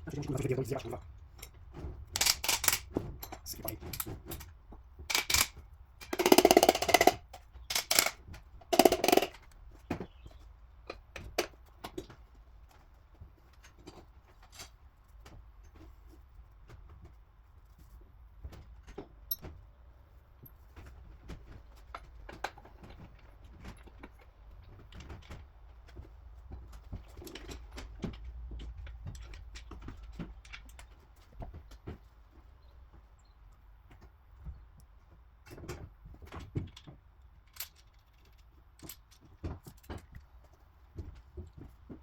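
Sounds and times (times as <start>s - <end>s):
metal tools clinking: 2.2s - 4.5s, 5.1s - 8.2s.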